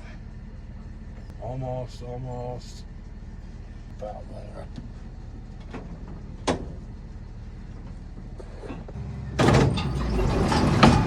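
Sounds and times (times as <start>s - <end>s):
tractor engine idling: 0.0s - 11.0s
baler metal parts clattering: 8.6s - 11.0s.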